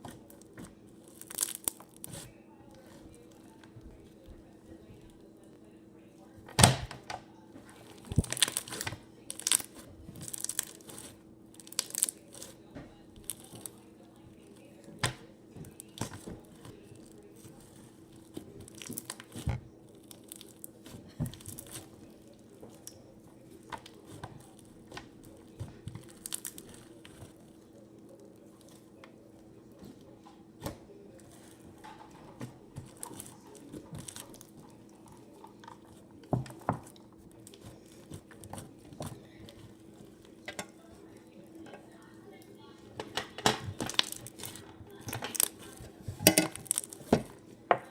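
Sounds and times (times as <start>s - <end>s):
slime crackling and popping: 0.1s - 3.0s, 7.8s - 12.6s, 13.2s - 13.8s, 15.0s - 27.6s, 32.8s - 36.0s, 43.2s - 47.5s.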